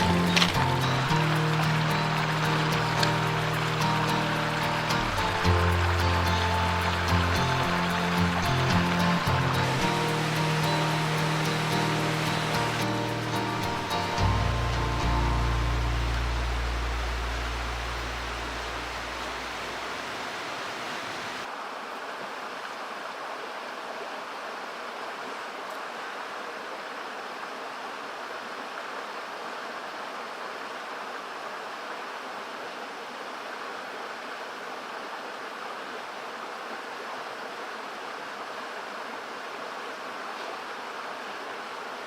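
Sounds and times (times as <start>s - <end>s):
mountain stream rushing: 0.0s - 42.0s.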